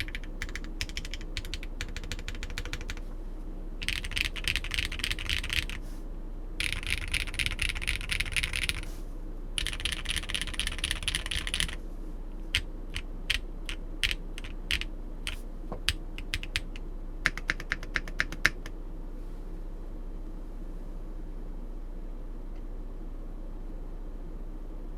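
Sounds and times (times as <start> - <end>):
mechanical keyboard typing: 0.0 - 3.0, 3.8 - 5.8, 6.6 - 8.9, 9.6 - 11.8, 12.5 - 14.9, 15.9 - 18.7.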